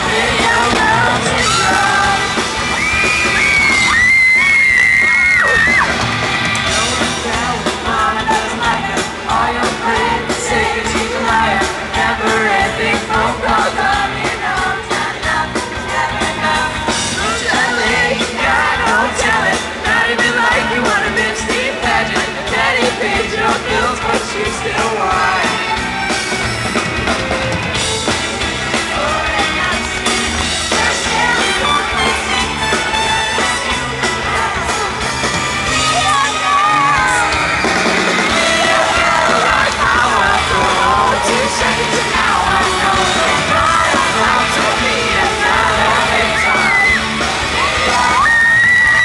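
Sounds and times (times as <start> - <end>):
person singing: 0.0 - 2.6, 6.8 - 25.8, 38.2 - 49.0
fans yelling and screaming: 0.0 - 49.0
live pop-rock band playing: 0.0 - 49.0.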